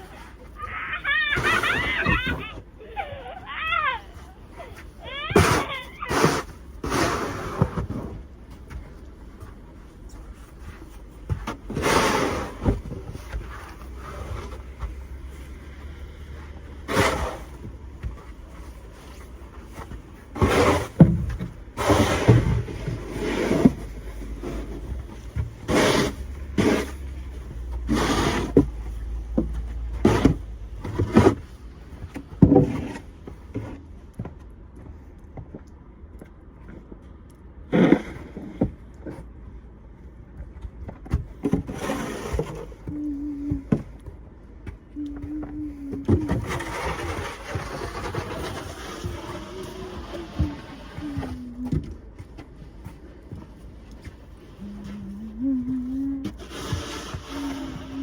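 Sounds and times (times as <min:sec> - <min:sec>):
snow shovel scraping snow: 0:04.7 - 0:07.8, 0:11.7 - 0:12.7, 0:16.8 - 0:17.6, 0:20.4 - 0:21.0, 0:21.8 - 0:24.9, 0:25.6 - 0:27.1, 0:27.7 - 0:28.6, 0:41.7 - 0:42.7, 0:46.3 - 0:51.4, 0:56.3 - 0:58.0.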